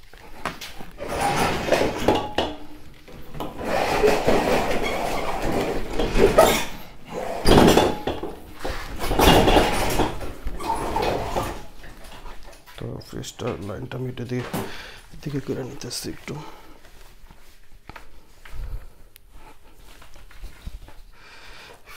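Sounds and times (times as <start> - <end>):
hard objects scraping and rubbing: 0.0 - 12.7.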